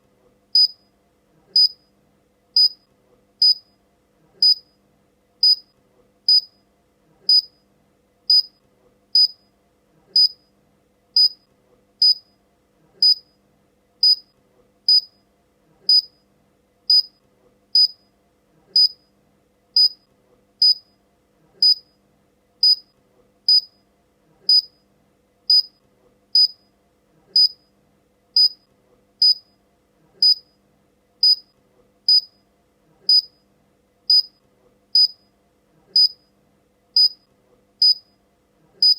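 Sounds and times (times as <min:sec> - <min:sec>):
short high-pitched beeps: 0:00.6 - 0:00.9, 0:01.6 - 0:01.9, 0:02.6 - 0:02.8, 0:03.4 - 0:03.7, 0:04.4 - 0:04.7, 0:05.4 - 0:05.7, 0:06.3 - 0:06.6, 0:07.3 - 0:07.6, 0:08.3 - 0:08.6, 0:09.2 - 0:09.5, 0:10.2 - 0:10.5, 0:11.2 - 0:11.4, 0:12.0 - 0:12.3, 0:13.0 - 0:13.3, 0:14.0 - 0:14.3, 0:14.9 - 0:15.2, 0:15.9 - 0:16.1, 0:16.9 - 0:17.2, 0:17.8 - 0:18.0, 0:18.8 - 0:19.0, 0:19.8 - 0:20.0, 0:20.6 - 0:20.9, 0:21.6 - 0:21.8, 0:22.6 - 0:22.9, 0:23.5 - 0:23.8, 0:25.5 - 0:25.8, 0:26.4 - 0:26.6, 0:27.4 - 0:27.6, 0:28.4 - 0:28.6, 0:29.2 - 0:29.5, 0:30.2 - 0:30.5, 0:31.2 - 0:31.5, 0:32.1 - 0:32.4, 0:33.1 - 0:33.4, 0:34.1 - 0:34.4, 0:35.0 - 0:35.2, 0:36.0 - 0:36.2, 0:37.0 - 0:37.2, 0:37.8 - 0:38.1.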